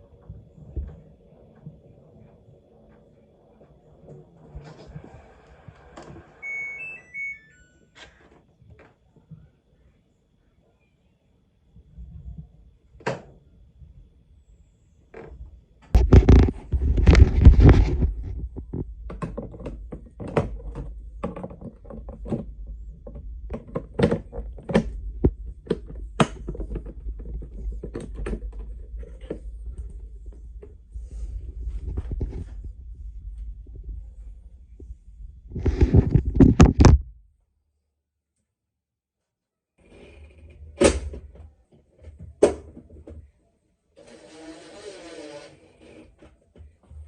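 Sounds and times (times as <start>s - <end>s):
washing machine humming: 0.0s - 8.2s.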